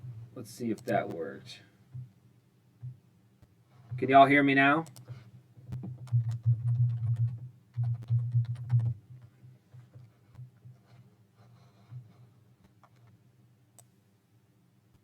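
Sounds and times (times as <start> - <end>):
clicks and taps: 4.8 - 10.9.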